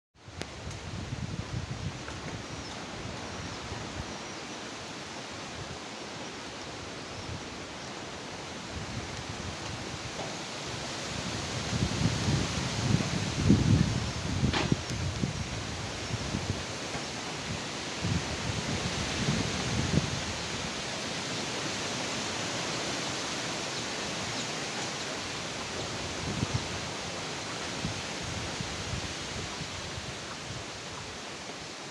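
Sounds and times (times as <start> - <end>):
wind rushing through trees: 0.2 - 31.9
wind buffeting microphone: 0.3 - 4.2, 8.6 - 16.8, 17.4 - 20.8, 25.4 - 31.2.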